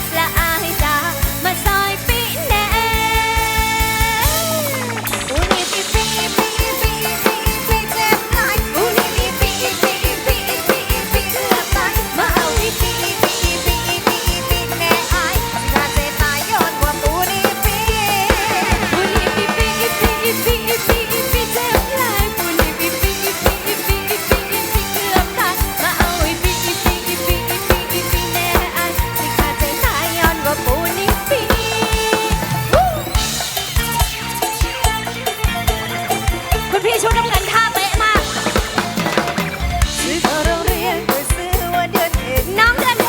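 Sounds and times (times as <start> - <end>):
drum kit fast beat: 0.0 - 43.0
live band instrumental music: 0.0 - 43.0.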